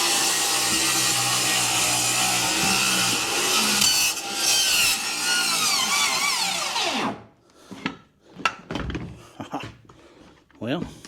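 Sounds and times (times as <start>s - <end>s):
power saw cutting wood: 0.0s - 7.2s
knocks and clatters: 7.8s - 9.8s.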